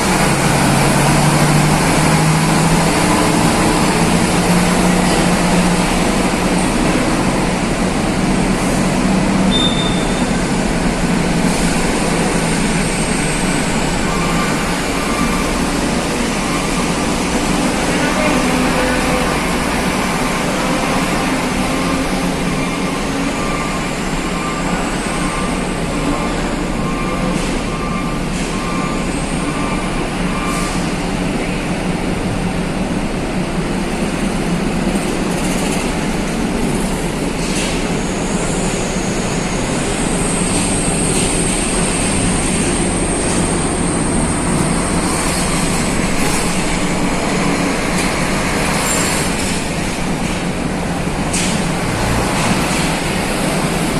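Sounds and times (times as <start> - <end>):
cars moving: 0.0 - 33.1, 33.8 - 53.9
heavy rumble of ferry machinery: 0.0 - 53.9.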